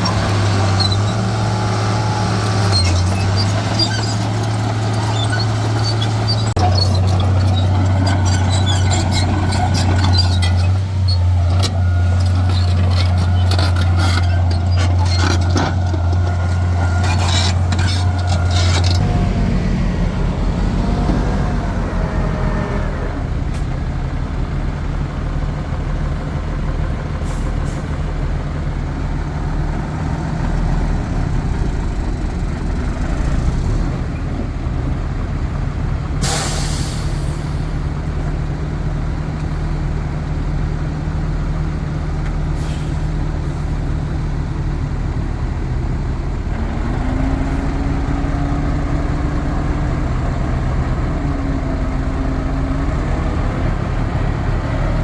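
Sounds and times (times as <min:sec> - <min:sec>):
heavy diesel engine running: 0:00.0 - 0:33.1.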